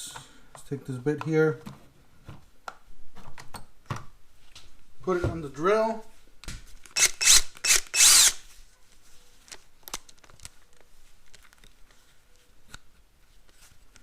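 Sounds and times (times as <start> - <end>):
power drill bursts: 7.0 - 8.4.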